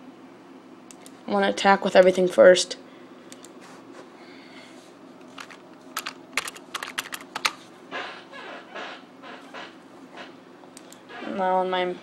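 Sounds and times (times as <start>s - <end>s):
keyboard and mouse clicking: 5.3s - 7.6s, 10.8s - 11.0s.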